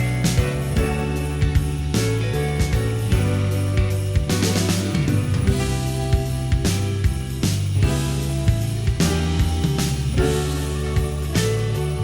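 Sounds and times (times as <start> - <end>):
background music with drum beat: 0.0 - 12.0.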